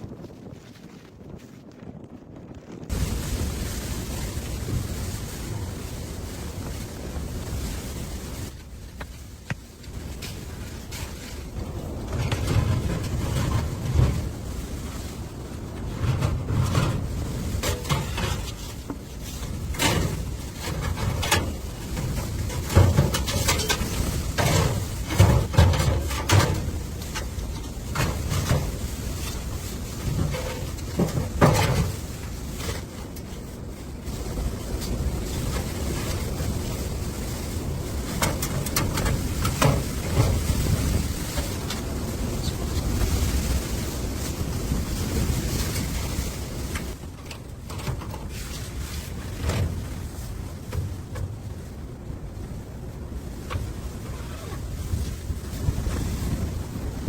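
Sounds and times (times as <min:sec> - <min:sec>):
wind gusting against microphone: 0:00.0 - 0:57.0
short knocks and crunches: 0:08.5 - 0:15.0, 0:15.7 - 0:33.3, 0:46.7 - 0:51.5.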